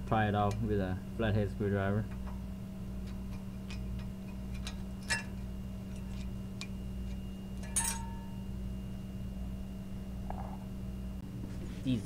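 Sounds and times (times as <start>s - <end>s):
steady low hum: 0.0s - 12.0s
ringing metallic clink: 7.6s - 8.5s.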